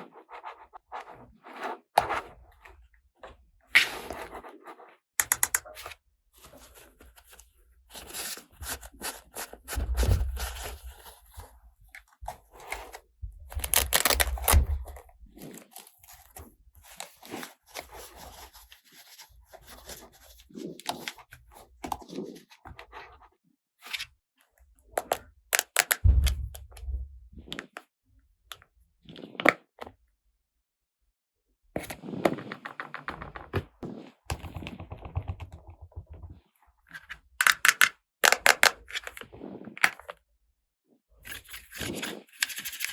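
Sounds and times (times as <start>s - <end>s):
plastic toy pieces clicking: 5.2s - 5.7s, 25.6s - 26.0s, 37.4s - 38.8s.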